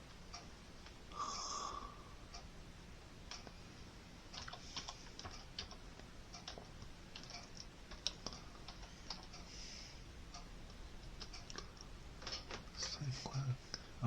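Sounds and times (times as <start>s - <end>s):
typing on a keyboard: 4.3s - 5.8s, 6.4s - 9.3s.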